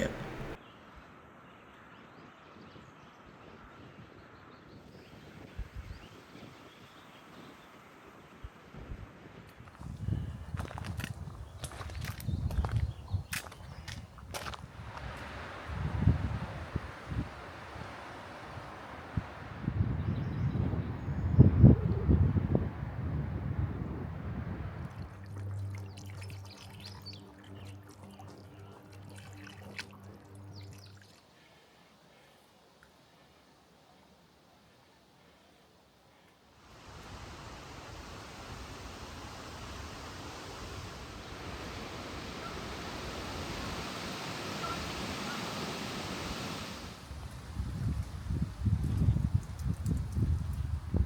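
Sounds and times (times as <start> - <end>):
birds chirping: 0.0 - 0.6, 9.8 - 22.0, 37.3 - 47.0
steady low hum: 0.0 - 0.6
wind noise: 4.8 - 6.9, 8.4 - 25.2, 36.8 - 51.0.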